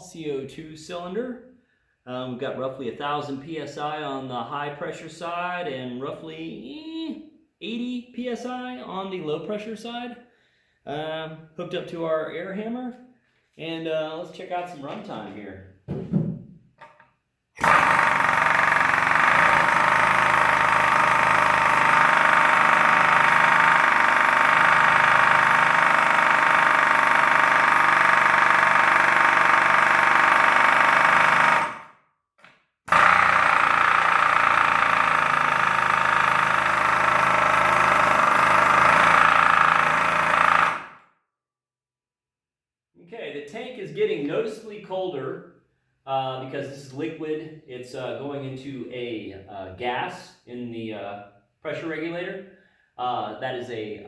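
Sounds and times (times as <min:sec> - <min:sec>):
pneumatic air hammer running: 0:17.6 - 0:32.0, 0:32.9 - 0:41.0.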